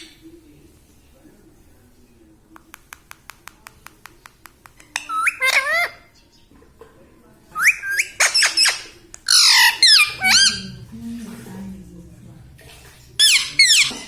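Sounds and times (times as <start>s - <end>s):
parrot squawking: 7.6s - 11.4s, 13.2s - 14.0s.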